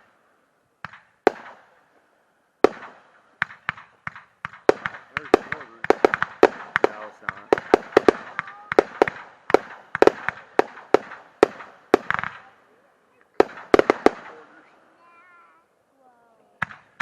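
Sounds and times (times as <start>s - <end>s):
fireworks bangs with crackling: 0.8s - 2.0s, 2.6s - 12.6s, 13.3s - 14.8s, 16.6s - 17.0s.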